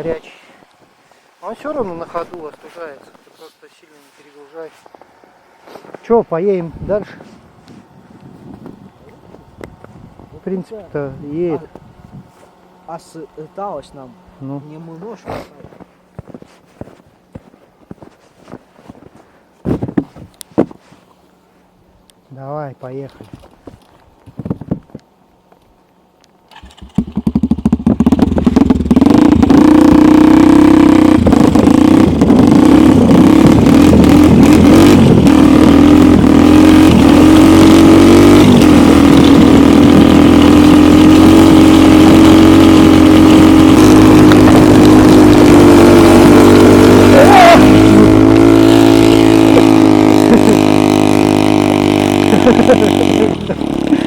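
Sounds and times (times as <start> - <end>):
snowmobile engine running: 0.0 - 0.2, 26.7 - 54.0.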